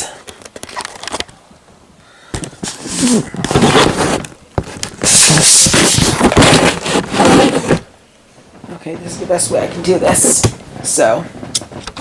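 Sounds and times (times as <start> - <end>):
handling noise on microphone: 0.3 - 12.0.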